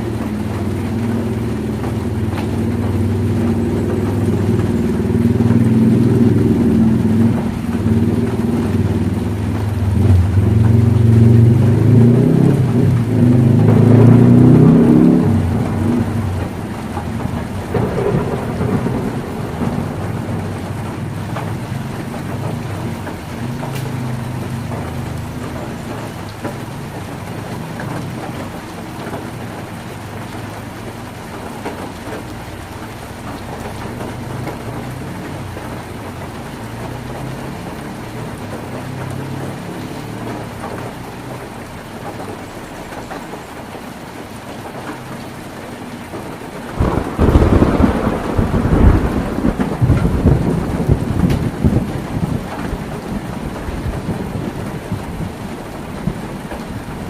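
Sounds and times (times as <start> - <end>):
low rolling thunder: 0.0 - 29.6, 46.1 - 57.0
heavy rain on a tin roof: 0.0 - 57.0.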